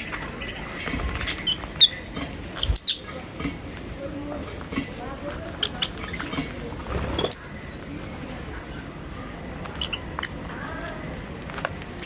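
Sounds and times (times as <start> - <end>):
lovebirds chirping: 5.5 - 7.8.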